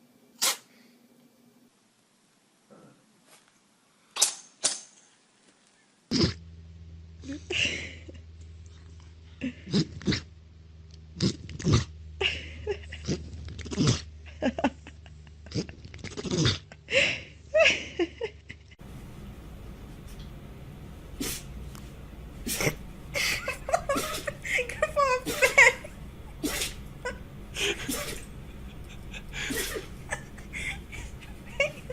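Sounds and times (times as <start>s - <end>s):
animals sneezing: 0.4s - 0.7s, 21.2s - 21.6s, 22.4s - 22.8s, 23.8s - 24.4s, 25.2s - 25.7s, 26.3s - 26.9s, 27.6s - 28.5s, 29.4s - 30.0s.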